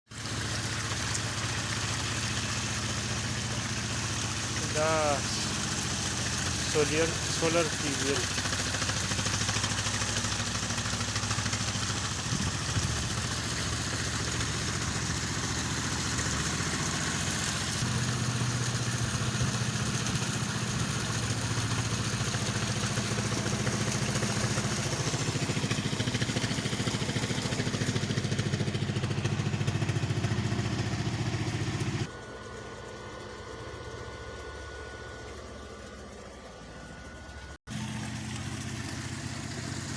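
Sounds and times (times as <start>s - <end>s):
motor humming: 0.2s - 28.1s
broad rushing noise: 4.3s - 8.4s.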